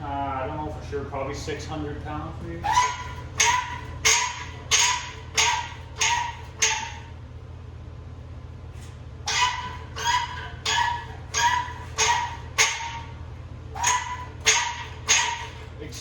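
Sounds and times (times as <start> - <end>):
steady low hum: 0.0 - 16.0
dog barking: 2.6 - 7.1, 9.3 - 15.7.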